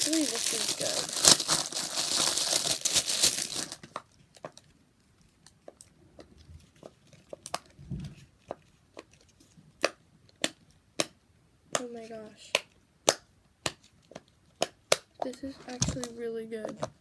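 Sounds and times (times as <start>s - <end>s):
plastic packaging crinkling and tearing: 0.0s - 4.5s.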